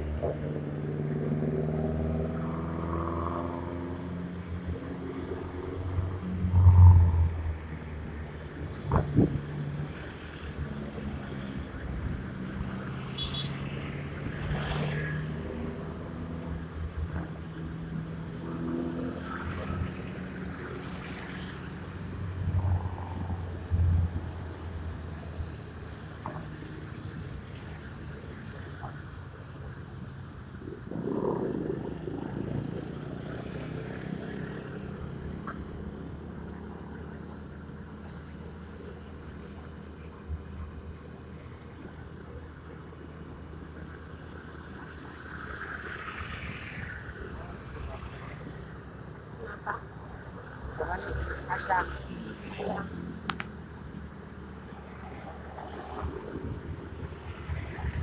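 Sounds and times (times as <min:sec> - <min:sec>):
road noise: 0:00.0 - 0:58.0.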